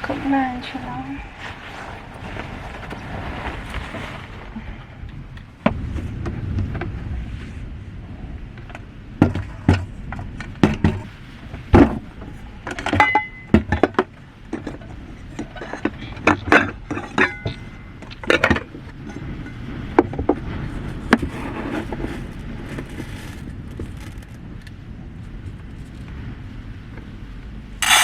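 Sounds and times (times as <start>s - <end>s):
steady low rumble: 0.0s - 28.0s
objects knocking and clicking: 9.2s - 11.1s.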